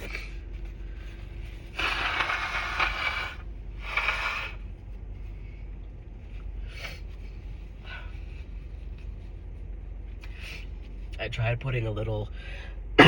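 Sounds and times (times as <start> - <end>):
person blowing nose: 1.8 - 4.6.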